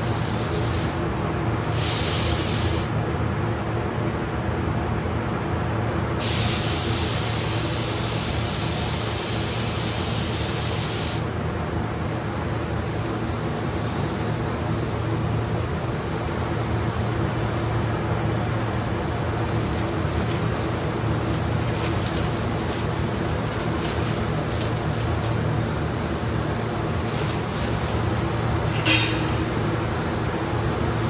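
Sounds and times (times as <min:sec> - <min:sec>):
spray gun air hiss: 0:00.0 - 0:03.0, 0:06.2 - 0:31.0
ventilation hum: 0:00.0 - 0:31.0.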